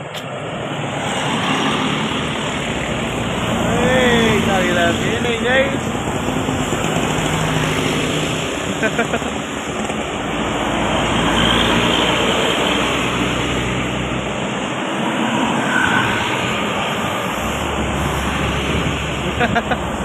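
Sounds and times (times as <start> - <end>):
road traffic passing: 0.0 - 20.0.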